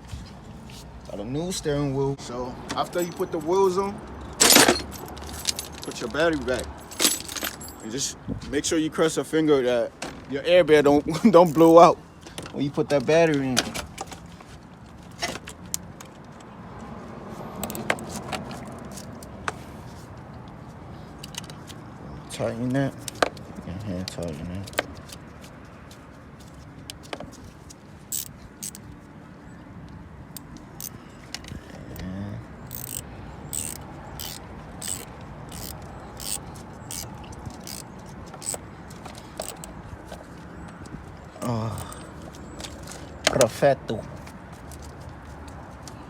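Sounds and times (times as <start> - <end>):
ratchet wrench clicking: 28.1 - 28.8, 32.7 - 39.8.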